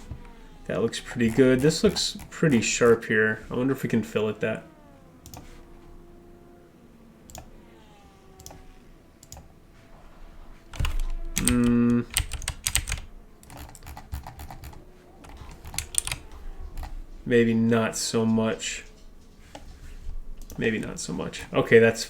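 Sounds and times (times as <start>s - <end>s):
computer keyboard typing: 1.1s - 2.7s, 10.7s - 17.0s
person humming: 10.8s - 12.1s.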